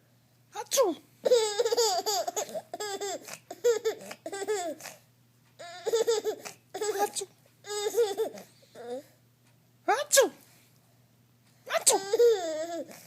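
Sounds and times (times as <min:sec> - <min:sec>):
baby giggling: 0:01.2 - 0:05.0, 0:05.6 - 0:08.9, 0:11.7 - 0:13.0.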